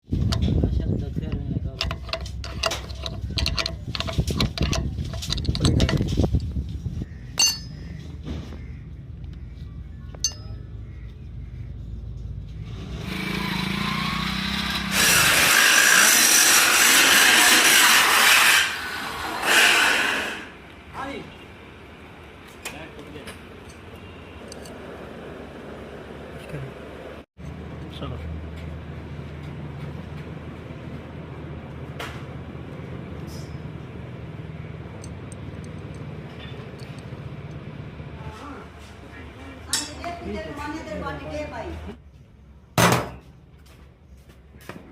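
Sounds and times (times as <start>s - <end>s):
low mechanical drone: 0.0s - 18.2s
metal clink: 1.8s - 6.0s, 7.4s - 7.8s, 10.2s - 10.6s
power tool harsh rushing noise: 12.8s - 20.6s.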